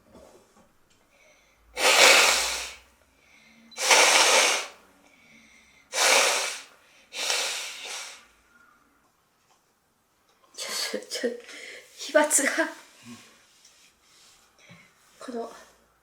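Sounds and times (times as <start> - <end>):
quick in-breaths: 1.2 - 8.3
woman sneezing: 1.8 - 2.8.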